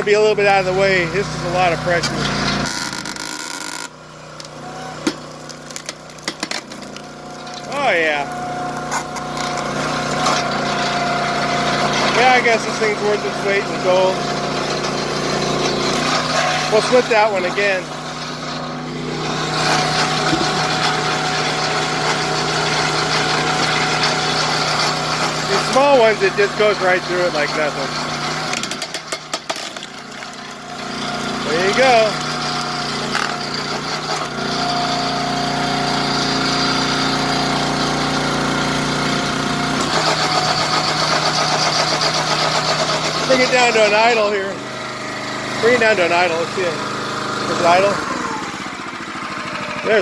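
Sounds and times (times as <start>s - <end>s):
log splitter engine running: 0.0s - 50.0s.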